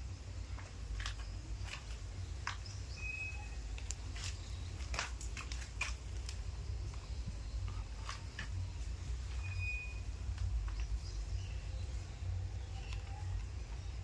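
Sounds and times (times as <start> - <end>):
steady low rumble: 0.0 - 14.0
macaws clicking and tapping: 0.5 - 8.8
bird thin chirp: 2.6 - 3.7.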